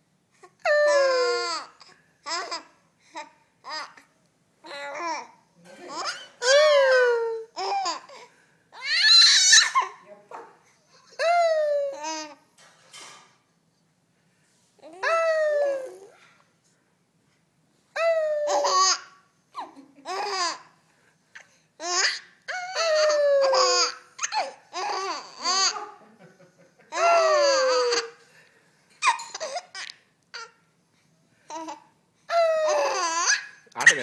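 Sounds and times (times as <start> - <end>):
baby laughing and babbling: 0.4 - 8.2, 11.1 - 12.4, 14.8 - 16.2, 18.0 - 20.7, 21.4 - 26.0, 26.9 - 28.2, 29.0 - 30.6, 31.5 - 34.0.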